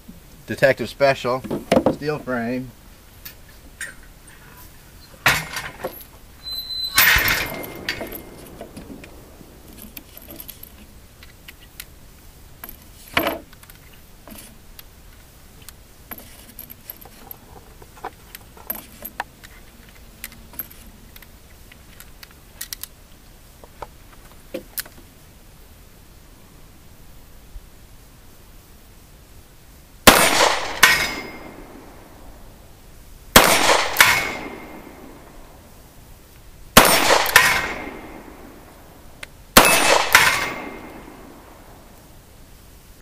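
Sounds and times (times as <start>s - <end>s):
gunshot bangs: 7.0s - 9.0s, 30.1s - 31.8s, 33.4s - 35.1s, 36.8s - 38.6s, 39.6s - 41.4s.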